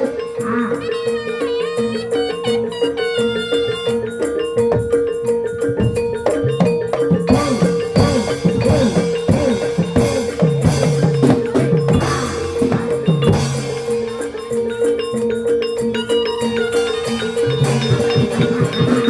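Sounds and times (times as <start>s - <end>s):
drumming with bending pitch: 0.0s - 19.0s
gamelan music: 0.0s - 19.0s.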